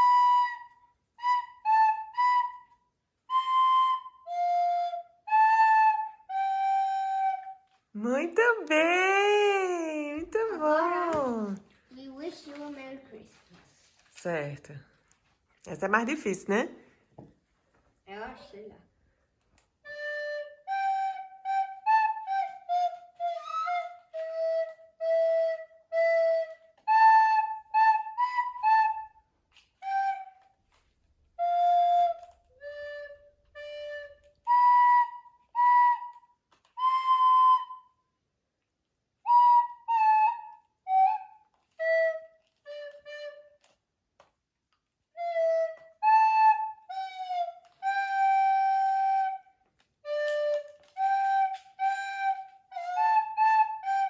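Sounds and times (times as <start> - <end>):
child playing recorder: 0.0 - 7.8, 19.8 - 38.2, 39.2 - 43.8, 45.1 - 54.0.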